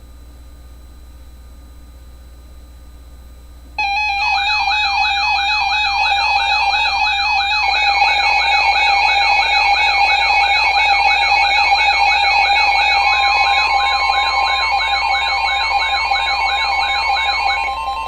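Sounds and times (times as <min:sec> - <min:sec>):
electronic weather alarm sweeping: 0:03.8 - 0:18.0
steady alarm tone: 0:03.8 - 0:18.0.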